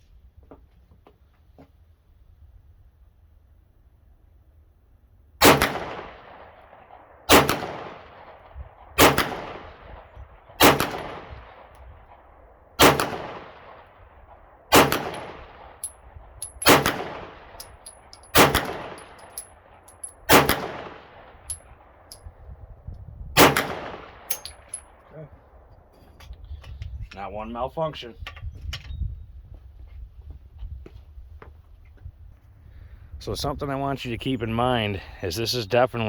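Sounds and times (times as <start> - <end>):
pistol shots echoing: 5.4 - 9.8, 10.5 - 11.7, 12.8 - 13.9, 14.7 - 22.1, 23.4 - 25.0
faint clinks: 15.8 - 16.7, 17.6 - 20.3, 24.3 - 25.0.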